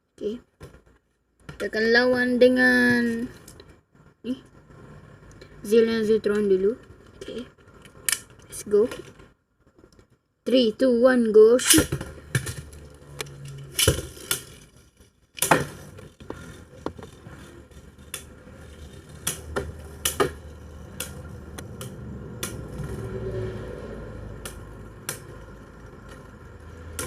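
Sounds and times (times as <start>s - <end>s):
spinning tops humming: 24.0s - 27.0s.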